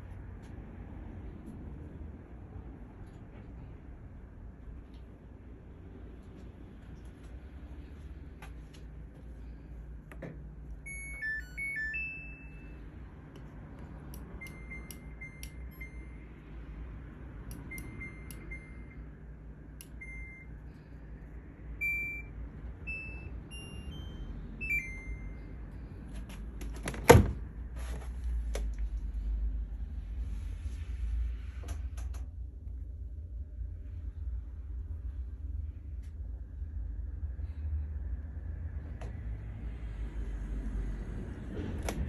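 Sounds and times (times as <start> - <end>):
washing machine control panel beeps: 10.8 - 12.9, 14.0 - 16.6, 17.5 - 19.2, 19.8 - 20.8, 21.7 - 25.6.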